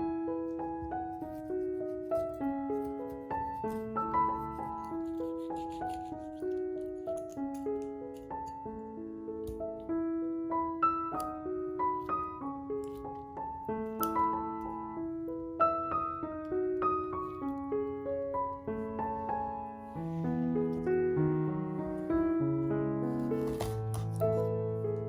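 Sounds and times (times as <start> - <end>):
piano-style keyboard melody: 0.0 - 25.0.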